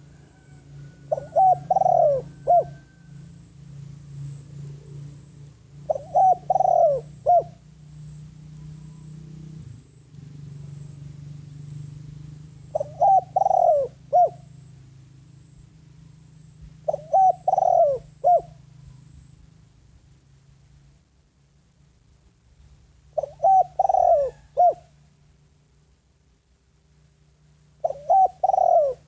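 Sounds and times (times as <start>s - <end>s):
dove cooing: 0.0s - 3.2s, 4.2s - 7.8s, 12.7s - 14.6s, 16.7s - 19.1s, 23.1s - 25.0s, 27.8s - 29.0s
steady low hum: 0.0s - 29.0s.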